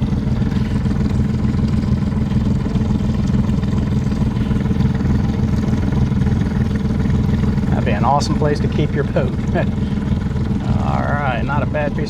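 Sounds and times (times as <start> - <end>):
motorboat engine running: 0.0 - 12.0.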